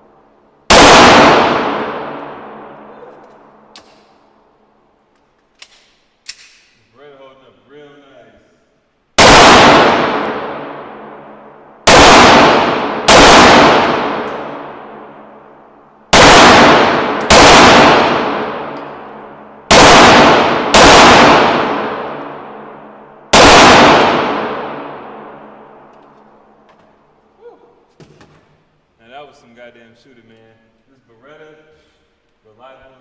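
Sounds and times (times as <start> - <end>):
pistol shots ringing: 0.7 - 4.2, 9.2 - 15.5, 16.1 - 26.6.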